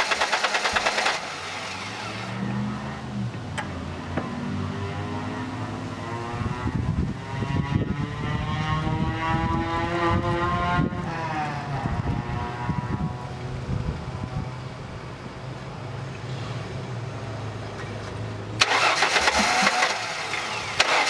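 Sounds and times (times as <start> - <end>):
car engine cranking and catching: 0.0 - 2.6, 17.9 - 21.0.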